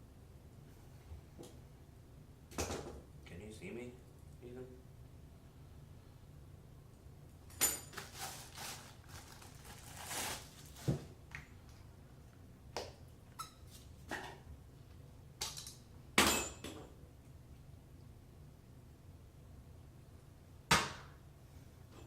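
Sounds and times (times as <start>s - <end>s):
packaging rustling: 8.0s - 11.1s.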